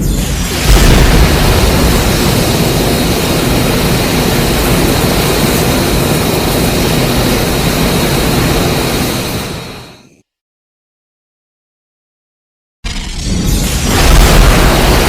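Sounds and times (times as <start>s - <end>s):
loud dense rushing noise: 0.2s - 10.0s, 13.6s - 15.0s.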